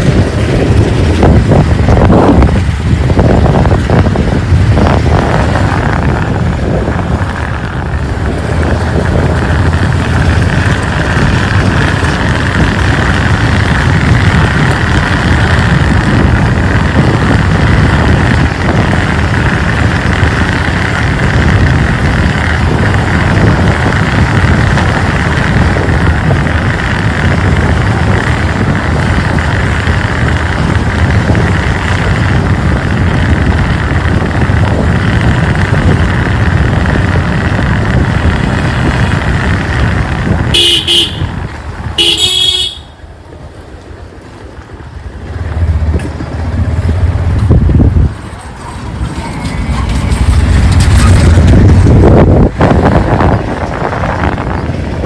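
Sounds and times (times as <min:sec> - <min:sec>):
motorcycle engine running: 0:00.0 - 0:55.0
wind noise: 0:00.0 - 0:55.0
vehicle horn honking: 0:40.4 - 0:41.4, 0:42.0 - 0:43.0.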